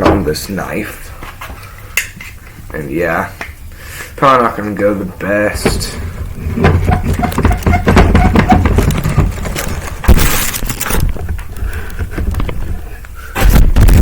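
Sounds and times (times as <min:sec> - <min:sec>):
objects clattering and knocking: 0:05.5 - 0:14.0.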